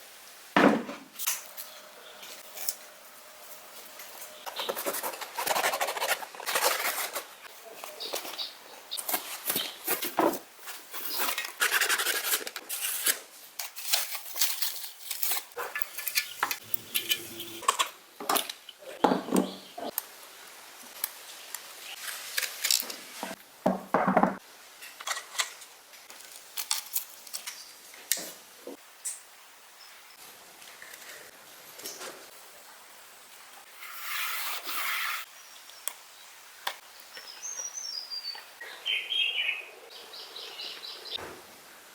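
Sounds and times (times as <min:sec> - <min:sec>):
sharp knock: 0:00.6 - 0:01.0
tools clicking and scraping: 0:11.0 - 0:18.6.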